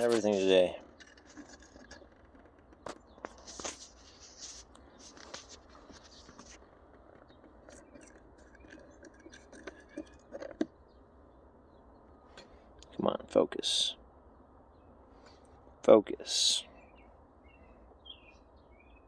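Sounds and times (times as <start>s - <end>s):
small parts clicking and scraping: 0.0s - 10.7s.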